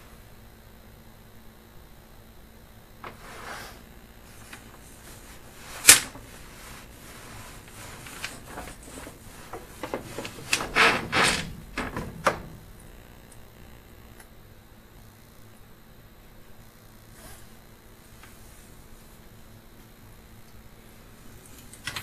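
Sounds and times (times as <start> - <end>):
scraping and clattering: 4.4 - 13.0.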